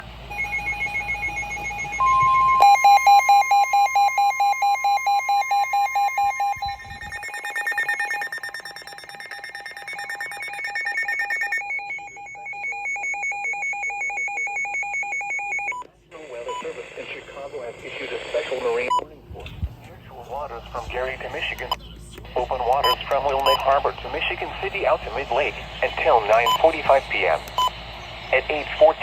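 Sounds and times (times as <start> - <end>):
rapid pulsing electronic beeps: 0.0 - 15.8, 22.4 - 29.0
steady alarm tone: 0.0 - 15.8.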